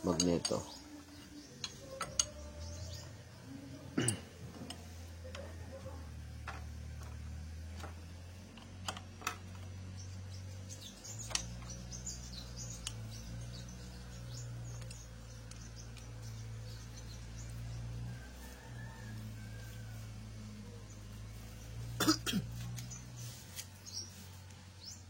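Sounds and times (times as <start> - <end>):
wrench clicking: 0.0 - 3.0.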